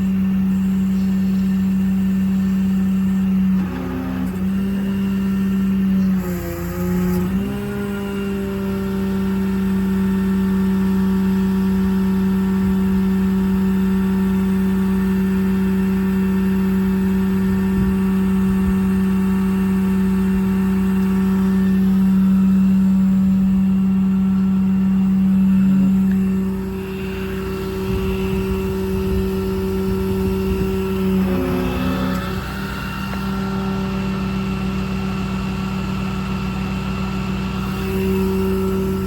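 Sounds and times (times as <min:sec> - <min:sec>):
crane drive whine: 0:00.0 - 0:39.0.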